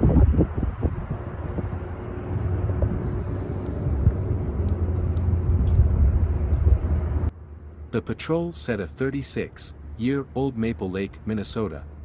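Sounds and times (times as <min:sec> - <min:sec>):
vehicle motor rumbling: 0:00.0 - 0:08.0.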